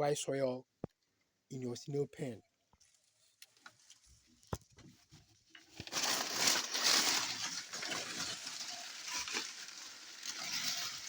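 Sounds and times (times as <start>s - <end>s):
dry leaves rustling and crackling: 5.6s - 11.0s.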